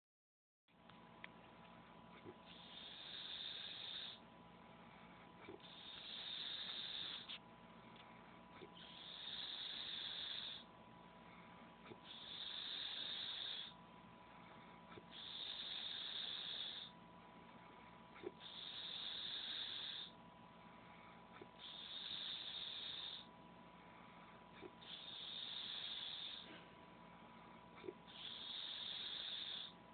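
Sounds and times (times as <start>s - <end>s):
quiet breathing: 1.7s - 29.9s
man snoring loudly: 2.5s - 4.2s, 5.6s - 7.3s, 8.8s - 10.6s, 12.0s - 13.8s, 15.1s - 16.9s, 18.4s - 20.1s, 21.6s - 23.3s, 24.8s - 26.4s, 28.1s - 29.8s.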